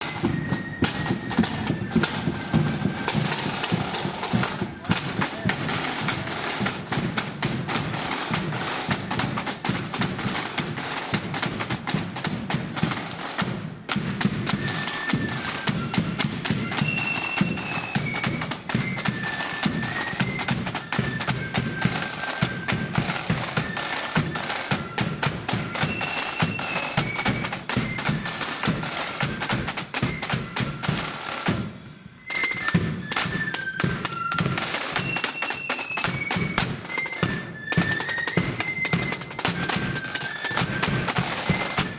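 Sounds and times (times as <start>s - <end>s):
flute melody: 0.0s - 41.9s
snare drum rolls: 0.0s - 41.9s.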